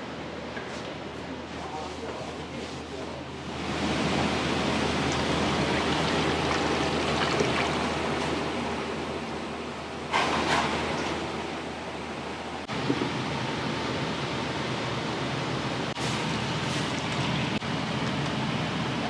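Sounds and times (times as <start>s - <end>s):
rushing water: 3.6s - 10.8s.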